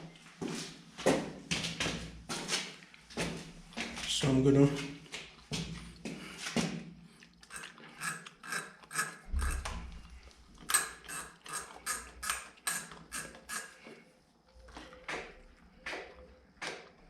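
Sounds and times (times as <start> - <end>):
tool clicking: 10.6 - 13.8.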